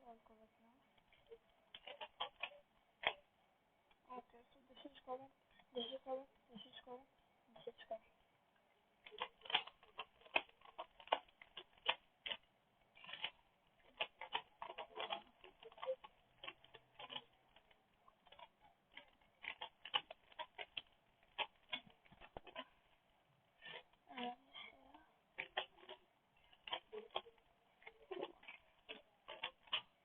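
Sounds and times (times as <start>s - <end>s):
puzzle cube plastic clicks: 1.0s - 3.3s, 9.0s - 22.8s, 25.3s - 30.0s.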